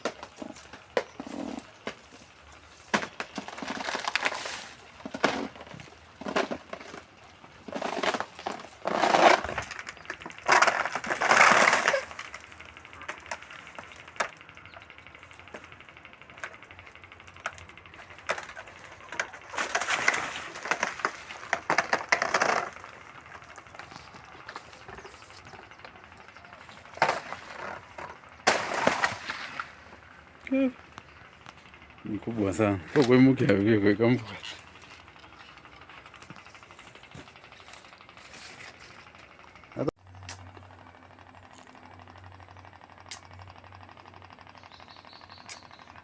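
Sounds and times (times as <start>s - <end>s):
leaves and twigs rustling: 0.0s - 30.4s, 34.1s - 39.7s
crunching footsteps: 18.0s - 30.1s.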